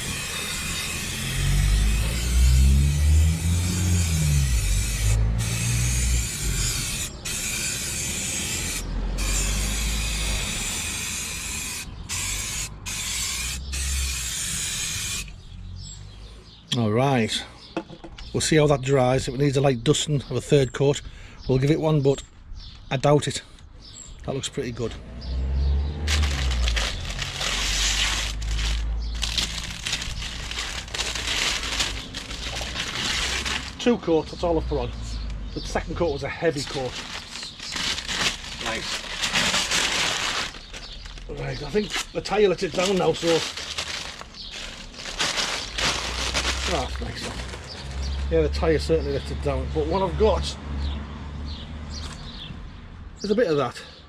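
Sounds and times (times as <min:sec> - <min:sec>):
aerosol paint spraying: 0:00.0 - 0:01.9.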